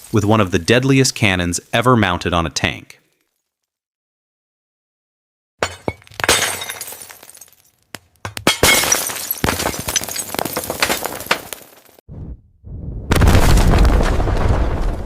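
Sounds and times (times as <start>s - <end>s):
glass shattering and crashing: 5.6s - 12.0s.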